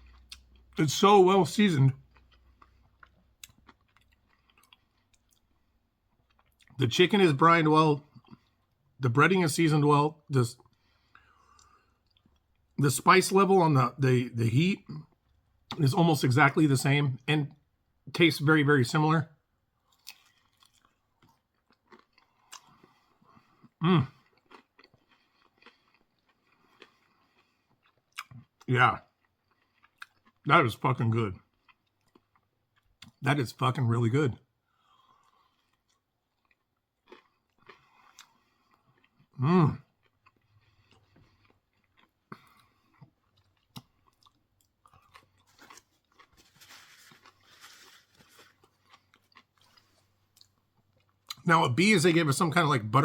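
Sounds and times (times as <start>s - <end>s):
person chewing crunchy food: 0.0s - 0.8s, 1.9s - 6.8s, 19.8s - 30.5s, 31.3s - 33.2s, 34.6s - 51.5s.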